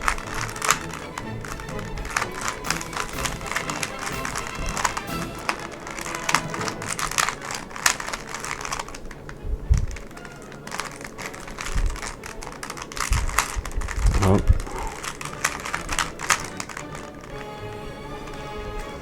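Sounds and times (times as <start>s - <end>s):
puzzle cube clicking: 0.0s - 17.5s.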